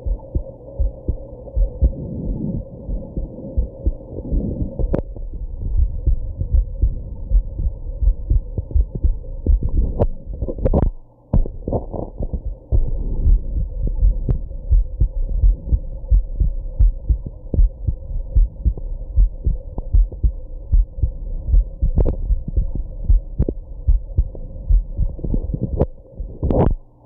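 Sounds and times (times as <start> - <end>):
heartbeat thumps: 0.0 - 26.8.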